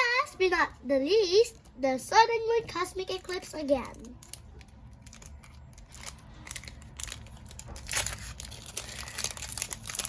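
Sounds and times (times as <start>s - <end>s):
foil wrapper crinkling and tearing: 3.1s - 10.0s.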